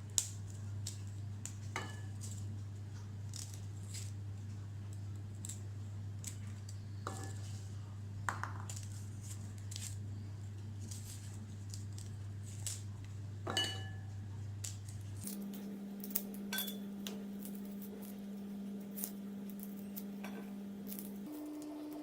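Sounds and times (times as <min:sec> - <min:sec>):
low steady hum: 0:00.0 - 0:22.0
ringing clink: 0:15.3 - 0:16.9.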